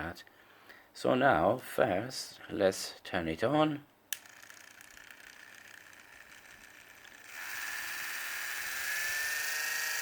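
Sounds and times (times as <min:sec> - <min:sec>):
small electric motor whining: 0:04.2 - 0:10.0.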